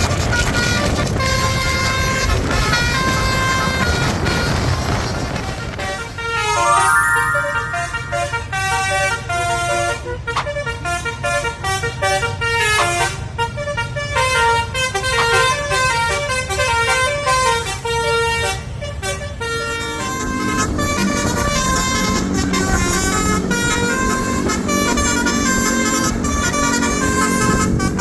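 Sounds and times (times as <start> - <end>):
musical air horn playing tune: 6.2 - 9.2
bus engine running: 15.0 - 28.0.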